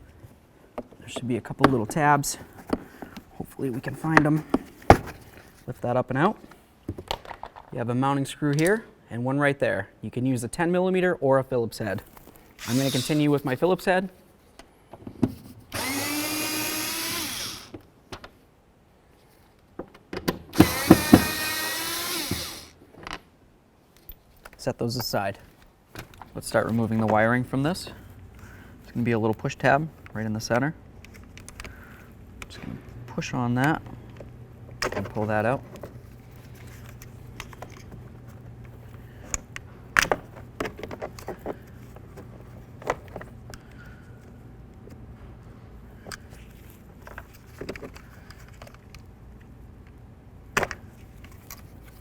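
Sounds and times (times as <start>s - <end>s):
power drill motor whine: 12.6s - 13.3s, 15.7s - 17.8s, 20.6s - 22.7s.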